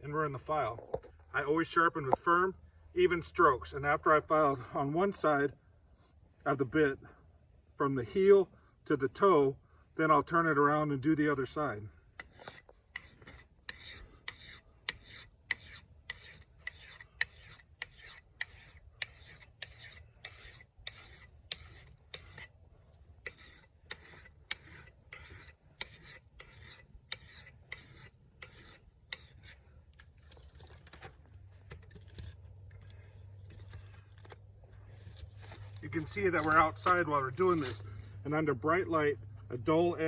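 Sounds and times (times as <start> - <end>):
file rasping on steel: 12.2 - 29.8.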